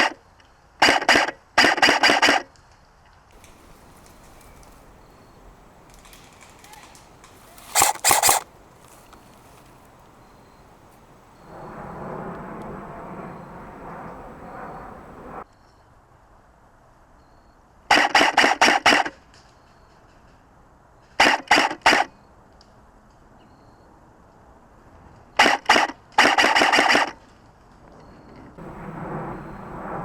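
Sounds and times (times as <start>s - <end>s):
airsoft gun firing rapid shots: 3.4s - 9.1s, 17.9s - 19.0s, 25.4s - 27.1s.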